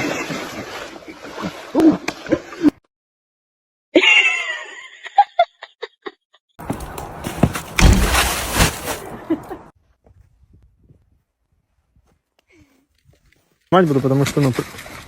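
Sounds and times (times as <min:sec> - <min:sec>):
noisy rustling: 0:06.6 - 0:09.2
ice hit: 0:06.7 - 0:09.1.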